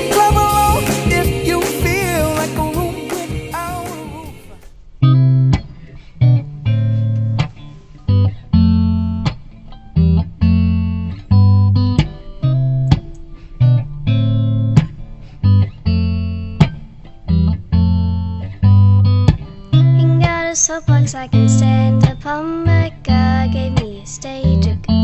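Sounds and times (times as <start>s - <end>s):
sharp percussive hits: 0.0s - 4.6s
guitar chords strummed: 0.0s - 25.0s.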